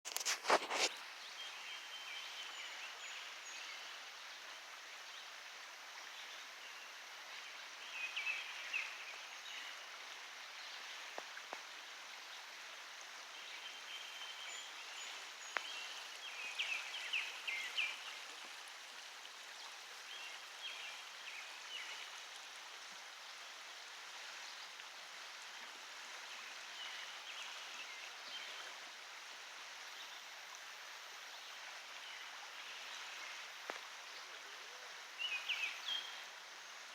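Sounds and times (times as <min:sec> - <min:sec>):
creek water flowing: 0:00.0 - 0:36.9.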